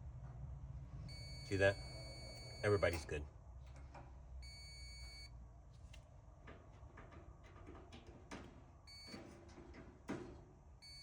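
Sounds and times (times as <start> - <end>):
continuity tester beep: 1.1 - 3.0, 4.4 - 5.3.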